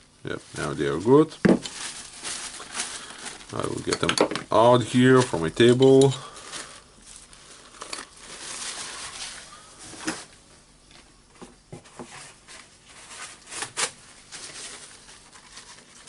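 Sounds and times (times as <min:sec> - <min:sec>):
soft rustling: 0:00.3 - 0:03.9, 0:04.8 - 0:16.0
small parts clicking and knocking: 0:03.8 - 0:04.5.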